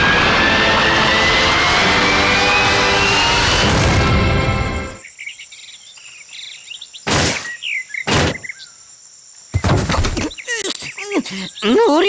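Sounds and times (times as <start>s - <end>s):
engine-like noise with rising whine: 0.0s - 5.0s
birds chirping: 4.7s - 8.9s, 9.5s - 12.0s
heavy thuds: 7.1s - 8.5s, 9.6s - 10.4s.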